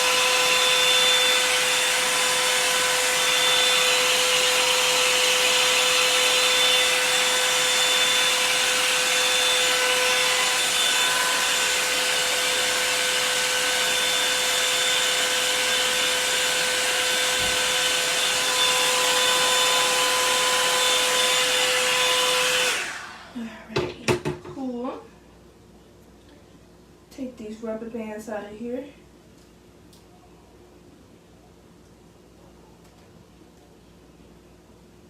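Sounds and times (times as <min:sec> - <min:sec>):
hair dryer blowing: 0:00.0 - 0:24.4.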